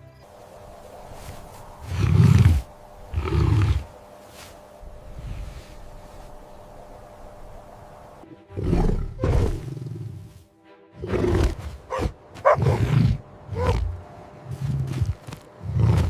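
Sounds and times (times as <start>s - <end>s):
background music: 0.0s - 5.1s, 6.0s - 16.0s
animal roars: 1.2s - 4.0s, 11.0s - 16.0s.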